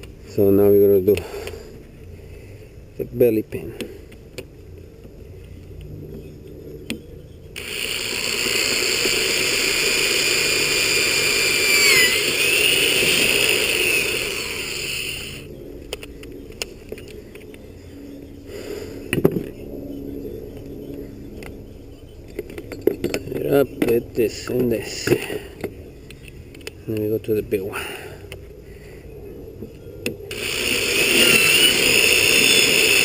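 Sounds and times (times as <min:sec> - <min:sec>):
small motor whining: 0:07.6 - 0:15.5, 0:30.3 - 0:33.0.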